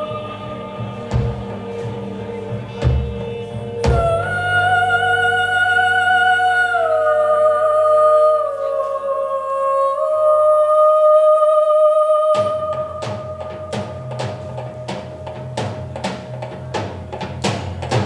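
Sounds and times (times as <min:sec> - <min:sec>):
drums: 0:00.0 - 0:07.2, 0:12.1 - 0:18.0
sustained humming melody: 0:00.0 - 0:15.7
low accompaniment: 0:00.0 - 0:18.0.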